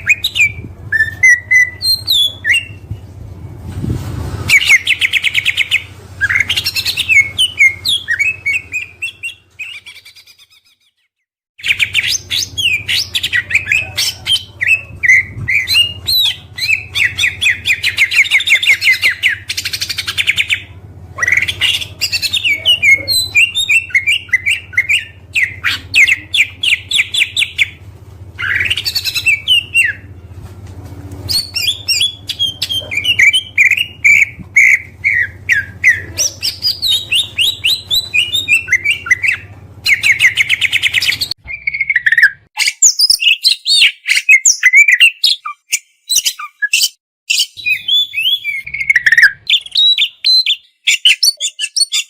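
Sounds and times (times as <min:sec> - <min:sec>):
songbird singing: 0:31.3 - 0:52.0.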